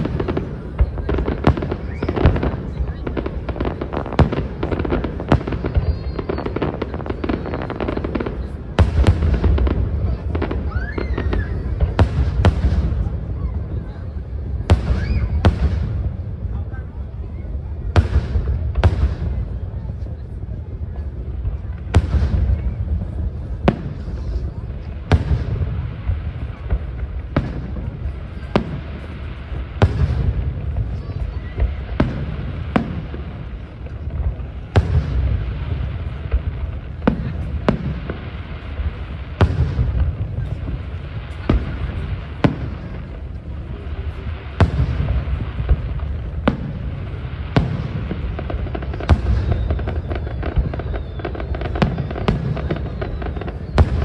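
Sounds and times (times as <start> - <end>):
fireworks bursting with sharp bangs: 0.0 - 54.0.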